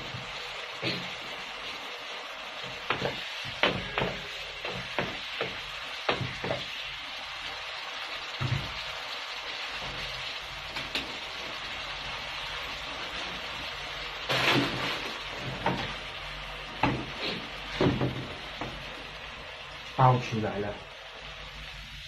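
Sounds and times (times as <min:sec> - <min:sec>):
crayfish sizzling in a wok: 0:00.0 - 0:22.0
spatula scraping a pan: 0:12.6 - 0:16.0.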